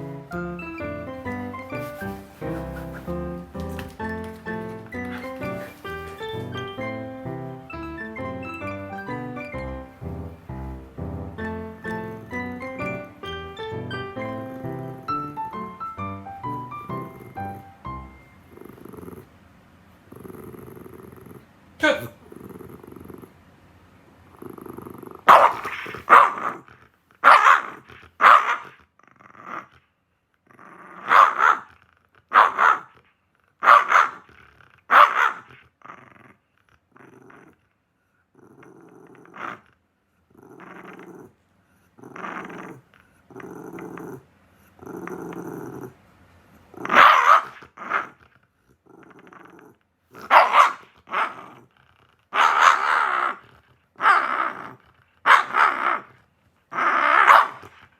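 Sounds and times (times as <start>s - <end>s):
dog growling: 14.2s - 15.4s, 16.9s - 17.8s, 18.4s - 19.4s, 20.1s - 23.4s, 24.3s - 29.8s, 30.4s - 32.9s, 33.6s - 37.6s, 38.3s - 46.0s, 46.6s - 57.9s
dog barking: 25.3s - 26.6s, 27.2s - 28.8s, 31.0s - 31.7s, 32.3s - 32.9s, 33.6s - 34.2s, 34.9s - 35.5s, 46.9s - 48.1s, 50.2s - 51.4s, 52.4s - 53.1s, 55.3s - 55.8s, 57.2s - 57.6s.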